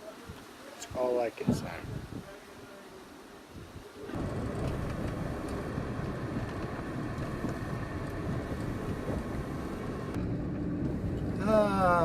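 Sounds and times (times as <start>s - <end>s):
car engine and road noise: 4.1s - 12.0s.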